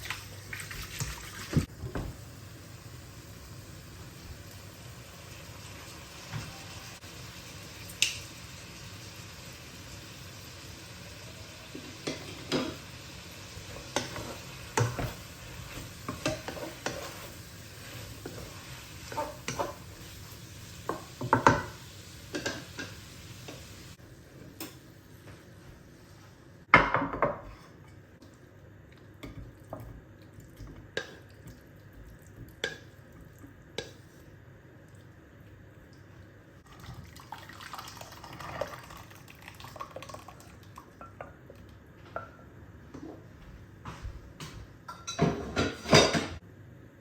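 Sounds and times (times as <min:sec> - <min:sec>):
utensils clinking on dishes and pots: 0:12.0 - 0:12.8, 0:44.9 - 0:46.4
cookware clatter: 0:44.9 - 0:46.4.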